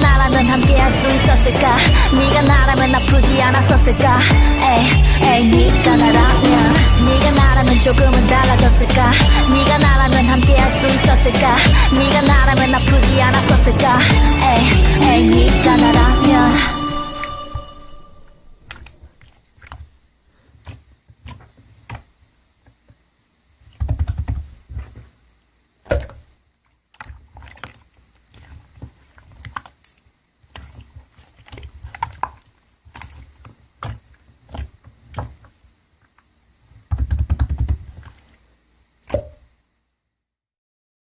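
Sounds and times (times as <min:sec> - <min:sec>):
low rumbling thuds: 0:00.0 - 0:16.6.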